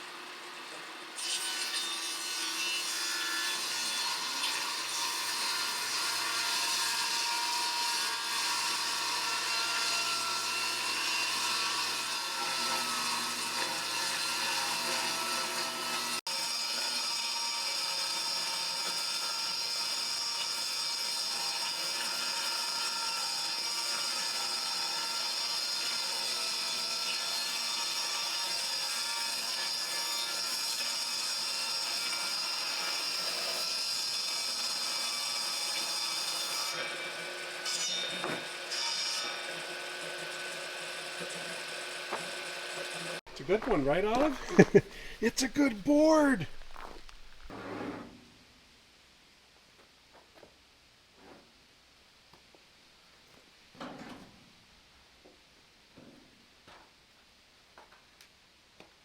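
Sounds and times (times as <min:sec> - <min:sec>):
power saw cutting wood: 0:00.6 - 0:47.6.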